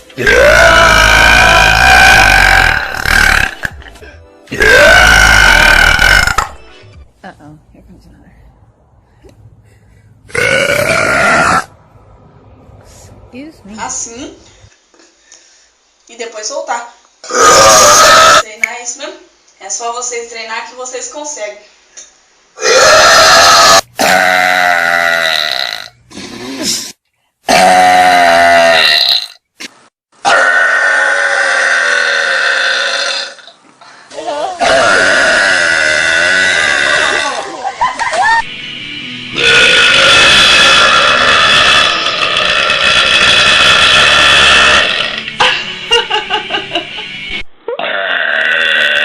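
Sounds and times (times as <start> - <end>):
girls burping: 0.2 - 6.6, 10.3 - 11.7, 34.3 - 37.5, 39.4 - 45.6.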